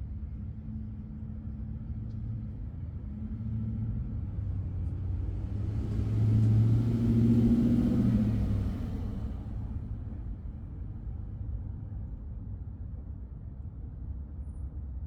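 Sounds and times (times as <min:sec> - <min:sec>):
motor vehicle passing: 0:05.2 - 0:10.2.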